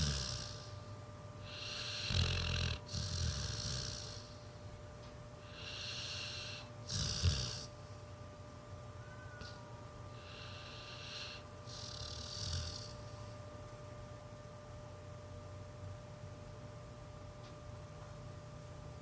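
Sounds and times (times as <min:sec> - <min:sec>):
dog snoring with snorts: 0:00.0 - 0:00.8, 0:01.4 - 0:04.5, 0:05.4 - 0:08.0, 0:09.2 - 0:13.4.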